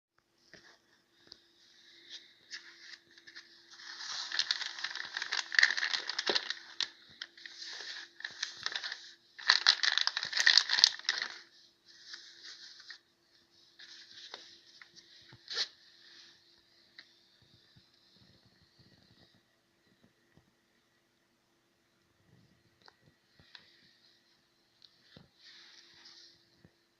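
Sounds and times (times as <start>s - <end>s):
faint steady hum: 0.2s - 26.9s
plastic packaging crinkling: 2.5s - 13.0s.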